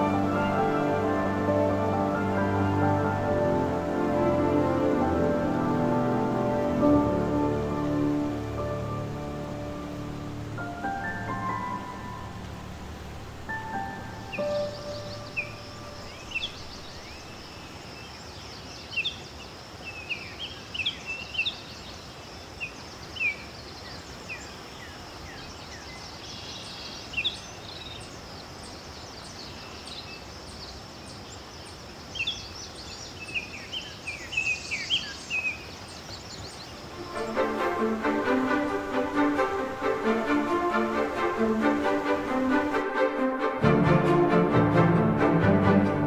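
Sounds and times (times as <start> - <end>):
outdoor hiss: 0.0 - 46.0
small birds chirping: 7.9 - 37.6.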